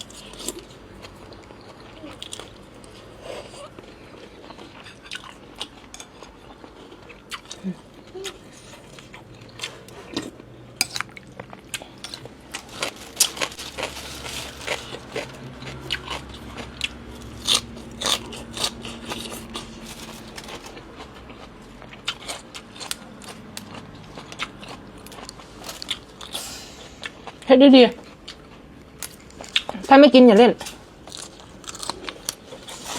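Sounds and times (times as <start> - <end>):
person chewing and crunching: 0.0 - 29.9, 30.6 - 32.9.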